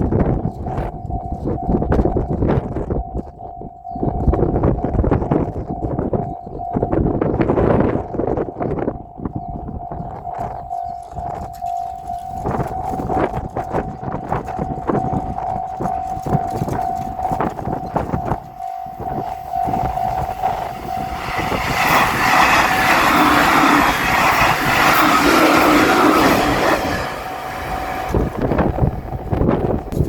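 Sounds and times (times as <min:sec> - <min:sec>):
level crossing bell ringing: 0:00.3 - 0:29.3
train passing over rails: 0:16.0 - 0:30.0.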